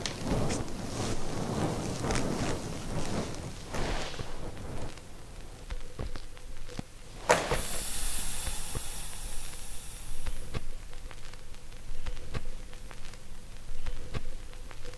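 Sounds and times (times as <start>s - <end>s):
rush of hiss: 0.0s - 5.7s, 7.1s - 10.8s.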